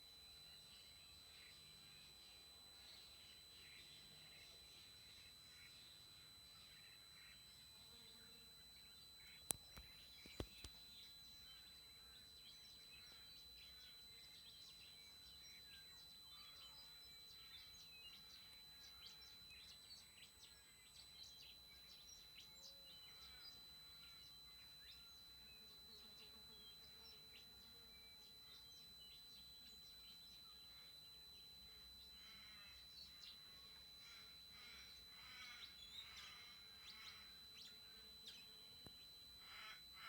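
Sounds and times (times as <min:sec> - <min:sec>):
high-pitched electronic whine: 0:00.0 - 0:40.0
birds chirping: 0:28.2 - 0:40.0.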